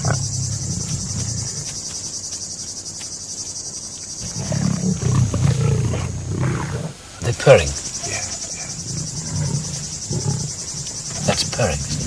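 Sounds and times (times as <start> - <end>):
lions purring rumble: 0.0 - 1.8, 4.2 - 12.0
insects buzzing: 0.0 - 12.0.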